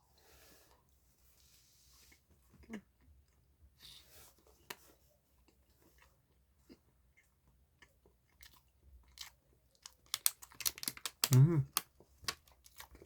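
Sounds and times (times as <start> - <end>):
mouth clicks and smacks chewing: 5.4 - 13.0.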